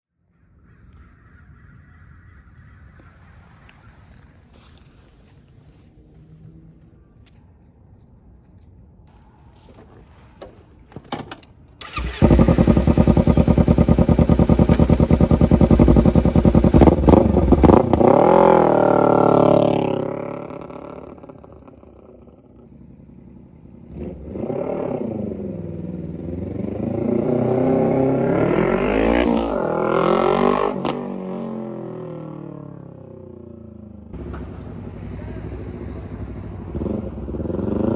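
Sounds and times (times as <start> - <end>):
motorcycle engine revving: 11.8 - 22.8, 23.7 - 37.9.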